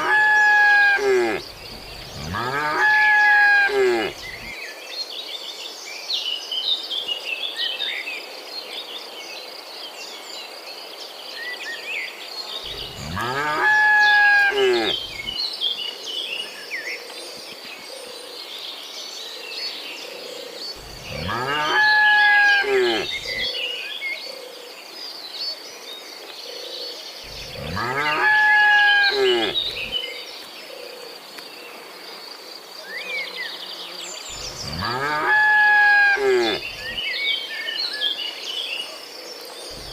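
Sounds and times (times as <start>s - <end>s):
cattle mooing: 0.0s - 4.5s, 12.7s - 15.4s, 20.8s - 23.4s, 27.3s - 30.0s, 34.3s - 37.0s
high insect buzz: 27.2s - 30.0s.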